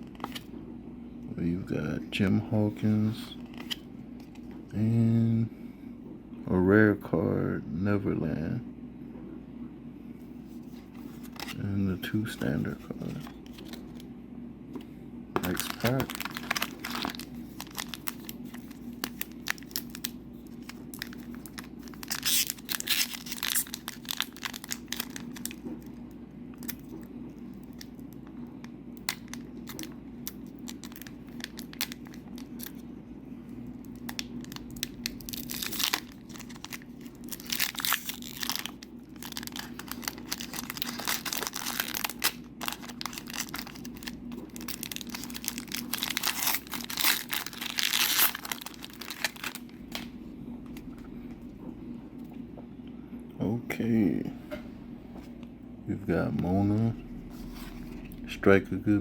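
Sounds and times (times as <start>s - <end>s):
faint low hum: 0.0s - 59.0s
foil wrapper crinkling and tearing: 15.4s - 28.3s, 29.0s - 32.8s, 33.8s - 50.0s.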